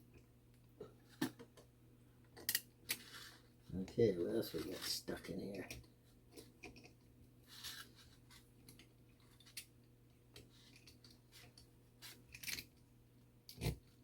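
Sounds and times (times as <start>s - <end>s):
small tools clicking and scraping: 10.3s - 12.8s.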